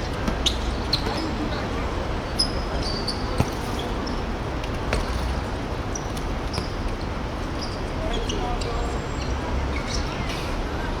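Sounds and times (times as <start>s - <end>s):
shoe squeaks: 0.3s - 1.3s, 2.4s - 4.3s
ball bouncing on court floor: 3.4s - 3.8s.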